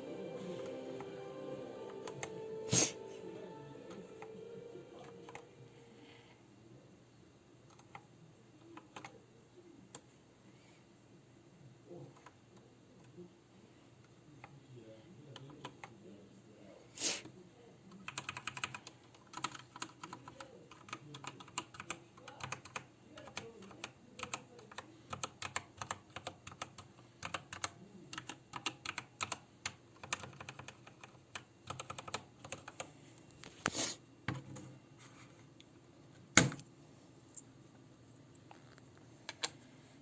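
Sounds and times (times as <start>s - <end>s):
mechanical keyboard typing: 7.7s - 8.0s, 8.8s - 9.2s, 17.9s - 32.9s.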